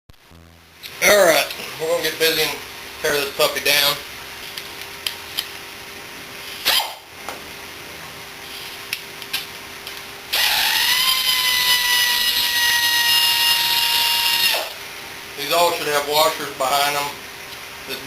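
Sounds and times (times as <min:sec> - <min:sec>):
power drill whining: 0:10.3 - 0:14.8.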